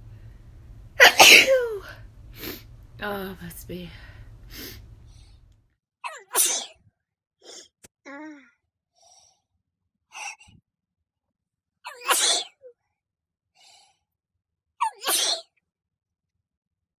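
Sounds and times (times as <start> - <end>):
person sneezing: 1.0 - 2.6, 6.2 - 6.8, 11.9 - 12.6, 14.8 - 15.5
soft breaths: 3.9 - 5.6.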